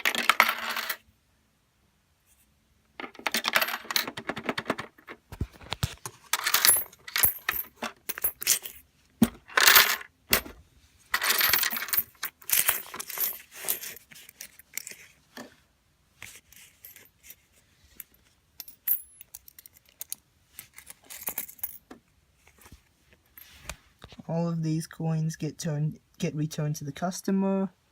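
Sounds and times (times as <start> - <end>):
coins clattering through mechanism: 0.0 - 1.0, 3.1 - 4.6, 6.4 - 8.8, 9.5 - 10.1, 11.2 - 14.0.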